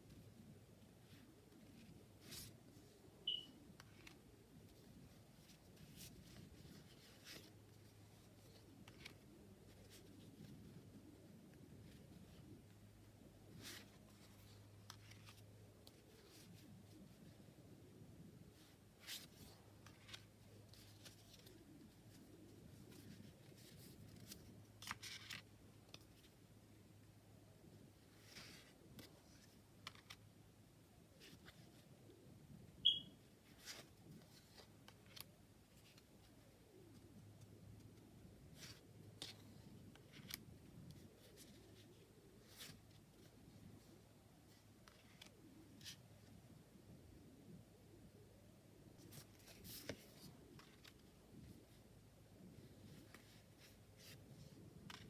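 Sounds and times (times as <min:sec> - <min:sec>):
cards rustling and tapping: 0:52.8 - 0:55.0.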